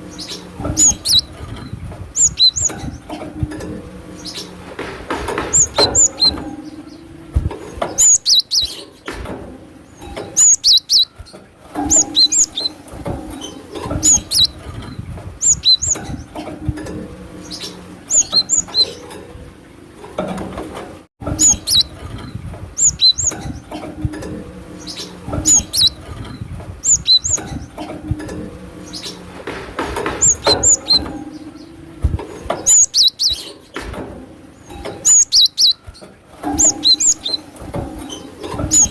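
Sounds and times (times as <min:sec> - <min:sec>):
bird whistling song: 0:00.1 - 0:03.0, 0:05.5 - 0:07.1, 0:07.9 - 0:08.8, 0:10.4 - 0:11.2, 0:11.9 - 0:12.8, 0:13.4 - 0:14.6, 0:15.4 - 0:16.2, 0:17.4 - 0:19.0, 0:21.4 - 0:21.9, 0:22.8 - 0:23.6, 0:24.8 - 0:26.0, 0:26.8 - 0:27.6, 0:30.2 - 0:31.8, 0:32.6 - 0:33.5, 0:35.0 - 0:35.8, 0:36.6 - 0:37.5, 0:38.1 - 0:38.9.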